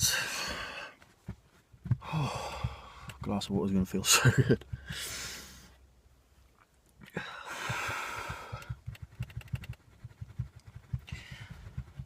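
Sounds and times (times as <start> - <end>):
man sighing heavily: 2.0 - 3.1, 7.0 - 8.6.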